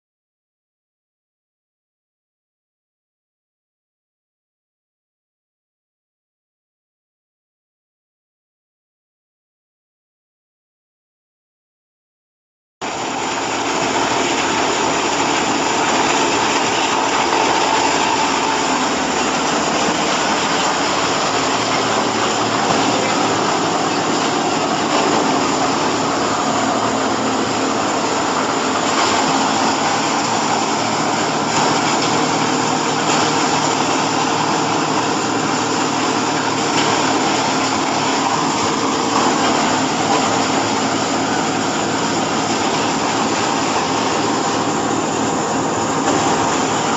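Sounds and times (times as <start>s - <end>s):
baling machine running: 12.8s - 46.9s.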